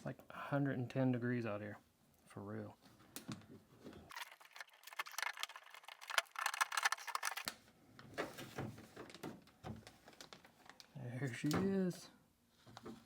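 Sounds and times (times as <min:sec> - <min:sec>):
plastic clicking and rattling: 0:04.1 - 0:07.5.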